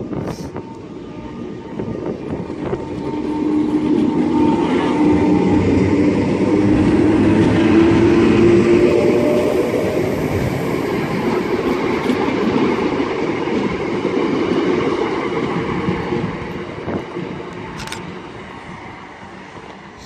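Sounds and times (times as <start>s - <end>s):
electric train pulling away: 0.0s - 14.1s.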